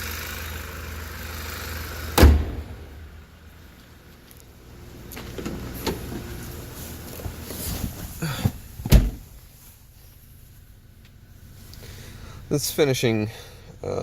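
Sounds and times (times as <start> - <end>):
car engine idling: 0.0 - 14.0
car door shutting: 2.1 - 3.0, 5.2 - 6.4, 7.2 - 9.4.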